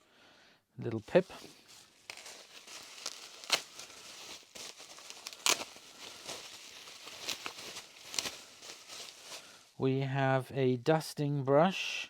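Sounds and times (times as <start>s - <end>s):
plastic wrapping crinkling: 1.2s - 9.6s.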